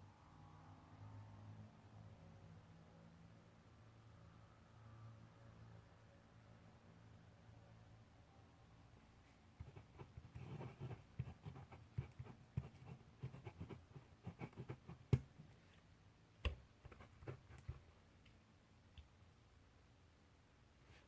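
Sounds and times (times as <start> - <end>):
pen scratching on paper: 9.6 - 15.4, 16.8 - 17.8.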